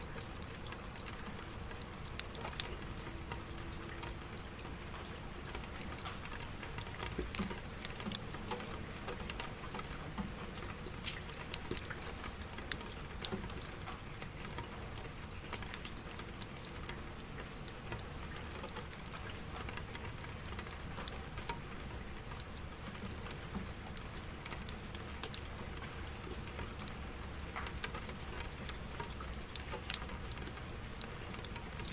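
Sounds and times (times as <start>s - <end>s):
rain drops pattering: 0.0s - 31.9s.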